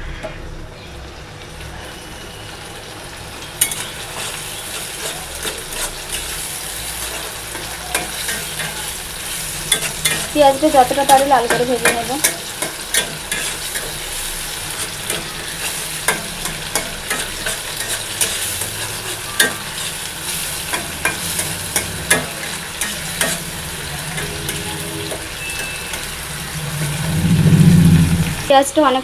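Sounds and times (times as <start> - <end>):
paste sizzling in hot oil: 1.1 - 29.0
utensil scraping and tapping pan: 9.7 - 10.4, 14.8 - 26.2.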